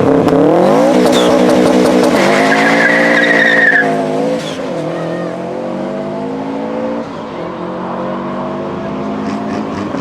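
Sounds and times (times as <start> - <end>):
car engine revving: 0.0 - 10.0
tyres squealing: 2.2 - 5.4.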